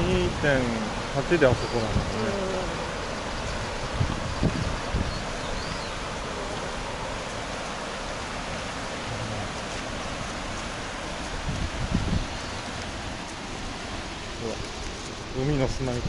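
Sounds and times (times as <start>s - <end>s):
river water rushing: 0.0s - 16.0s
short low thumps: 9.0s - 9.7s.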